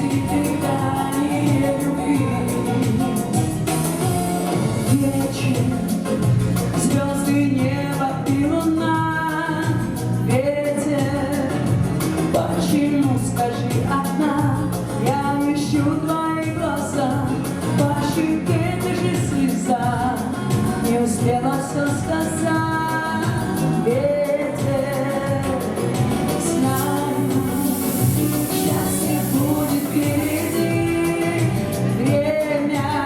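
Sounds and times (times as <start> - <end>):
pop song with singing and band: 0.0 - 33.0
high hiss: 26.7 - 30.8.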